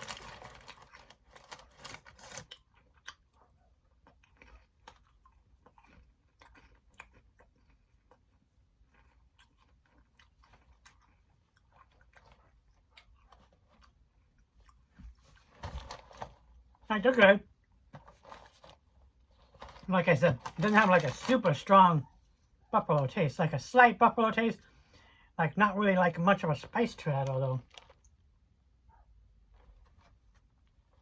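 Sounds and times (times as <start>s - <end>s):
person chewing crunchy crackers: 0.0s - 16.8s.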